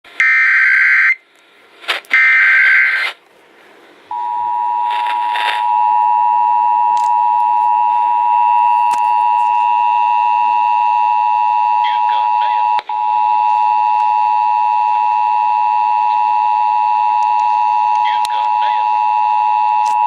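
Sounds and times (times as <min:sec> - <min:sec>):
harsh digital data bursts: 0:02.2 - 0:03.2
steady two-tone attention signal: 0:04.1 - 0:19.8.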